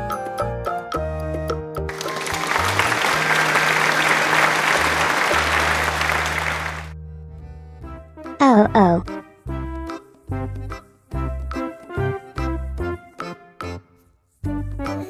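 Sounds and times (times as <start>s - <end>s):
audience applauding: 1.9s - 7.0s.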